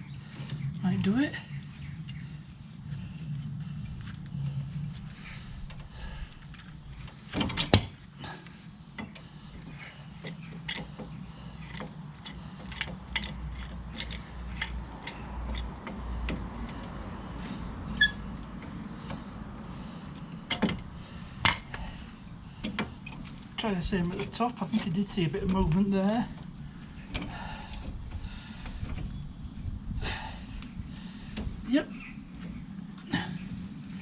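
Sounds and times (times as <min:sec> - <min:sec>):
small metallic clicks: 0:10.1 - 0:19.3.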